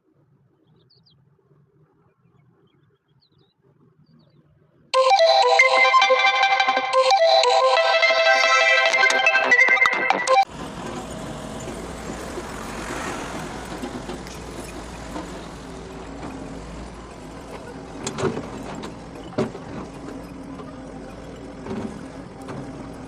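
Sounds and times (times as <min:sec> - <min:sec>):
excavator engine humming: 0:05.0 - 0:23.0.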